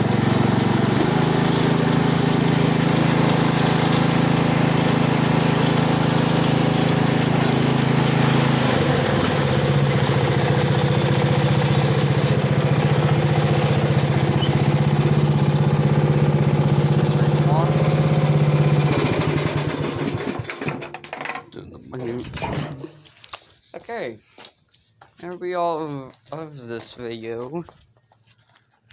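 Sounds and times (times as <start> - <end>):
riding lawn mower engine running: 0.0 - 21.4.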